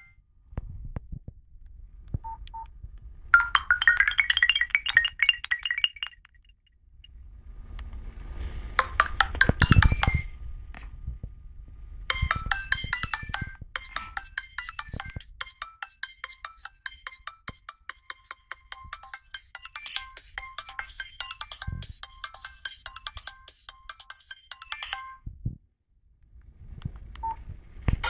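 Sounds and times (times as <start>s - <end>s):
phone ringtone melody: 3.4s - 6.4s, 12.1s - 25.2s.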